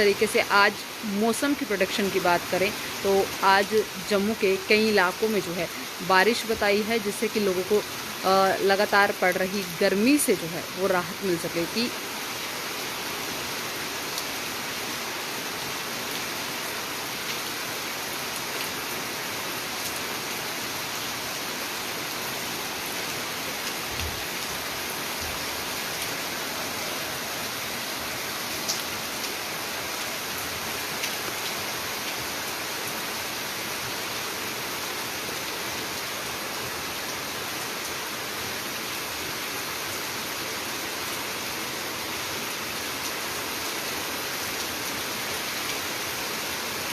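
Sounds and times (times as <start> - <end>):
steady rainfall: 0.0 - 46.9.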